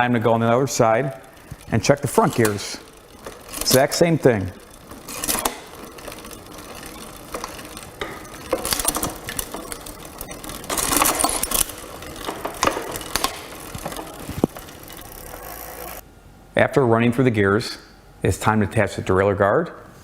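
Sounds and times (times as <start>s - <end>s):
bike chain clicking and rattling: 0.0s - 16.0s.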